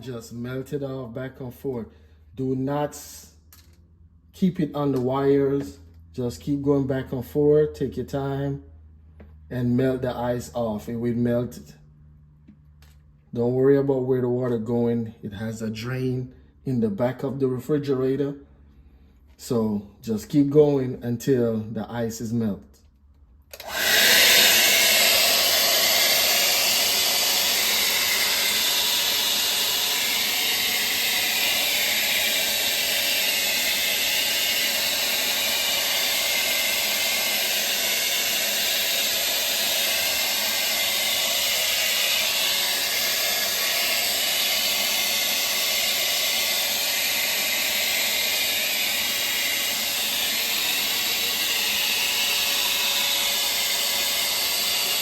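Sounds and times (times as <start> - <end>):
hair dryer blowing: 23.5 - 55.0.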